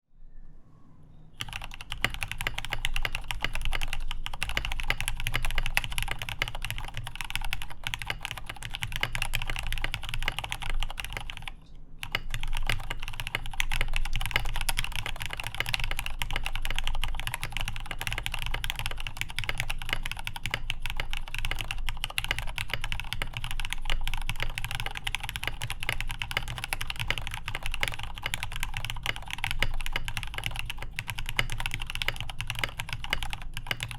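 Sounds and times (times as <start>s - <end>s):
mechanical keyboard typing: 1.4s - 33.9s.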